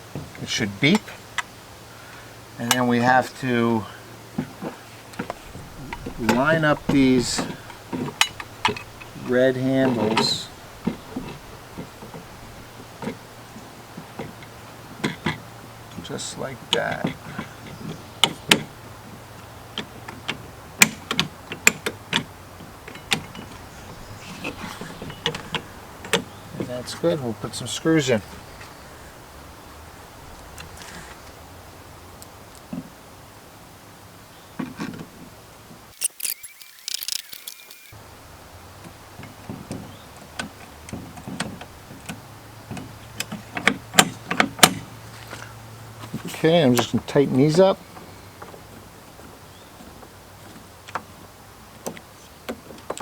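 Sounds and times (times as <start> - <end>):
plastic parts clicking: 36.0 - 38.0.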